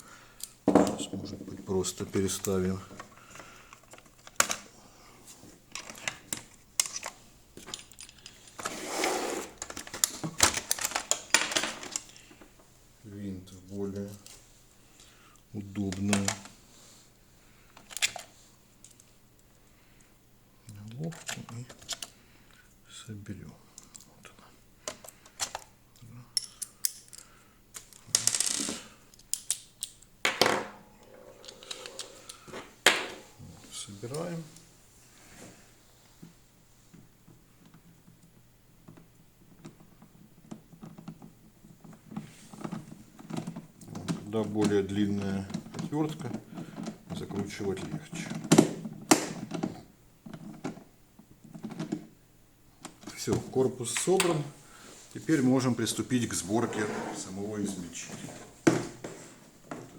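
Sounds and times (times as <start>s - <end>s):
rustling scrape: 8.6s - 9.6s, 56.4s - 59.5s.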